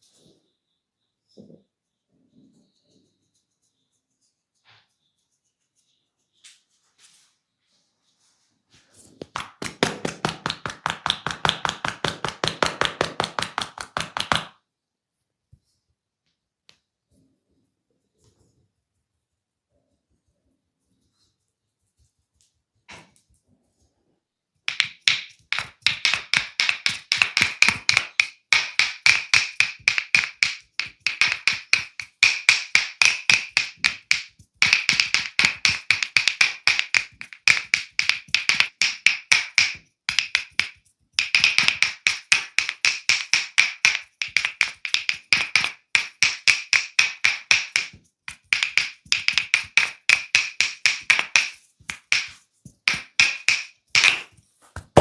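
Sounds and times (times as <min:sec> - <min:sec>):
hands slapping in massage: 0:09.2 - 0:14.6, 0:24.7 - 0:55.0.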